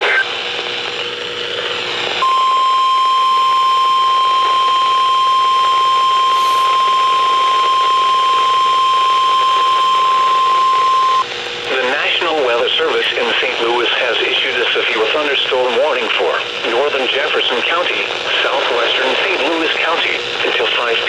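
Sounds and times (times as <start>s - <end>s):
high steady alarm tone: 2.2s - 11.2s
radio static hiss: 2.8s - 21.0s.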